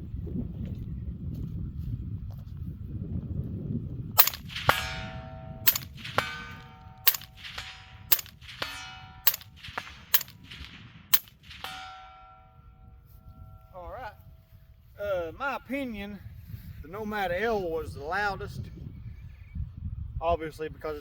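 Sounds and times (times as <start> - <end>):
suppressed rifle shots: 4.2 - 12.5
metallic ringing: 4.2 - 14.5.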